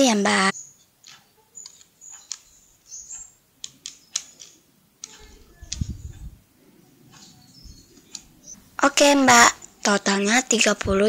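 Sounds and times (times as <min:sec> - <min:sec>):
sharp clicks and taps: 0:01.0 - 0:06.4, 0:07.1 - 0:08.6.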